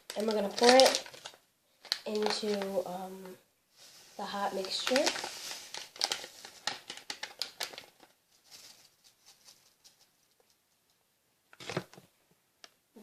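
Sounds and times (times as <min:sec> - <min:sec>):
packet rustling: 0:00.0 - 0:03.0, 0:03.9 - 0:10.6.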